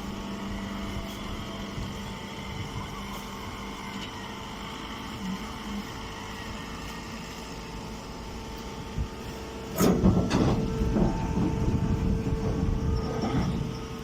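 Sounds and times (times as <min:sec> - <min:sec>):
baler machine hum: 0:00.0 - 0:14.0
press rumbling and rattling: 0:07.6 - 0:14.0.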